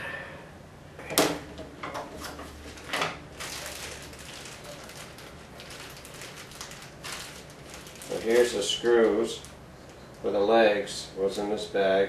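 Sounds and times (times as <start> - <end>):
plastic bag rustling: 2.1 - 9.6.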